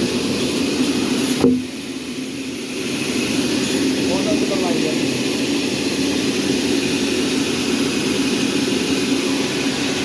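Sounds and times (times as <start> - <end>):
sawmill machinery drone: 2.7 - 10.0.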